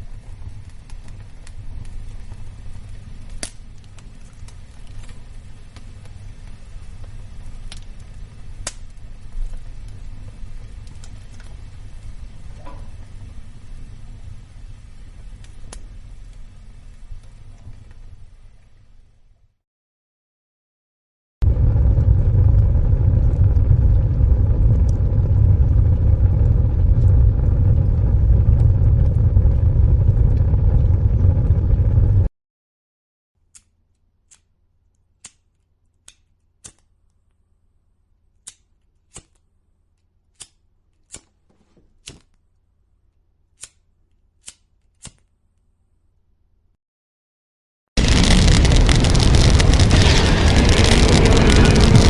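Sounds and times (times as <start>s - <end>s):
fire crackling and popping: 0.0s - 18.7s, 21.4s - 32.3s, 48.0s - 52.0s
faint low hum: 21.4s - 32.3s
roar of flames: 21.4s - 32.3s, 48.0s - 52.0s.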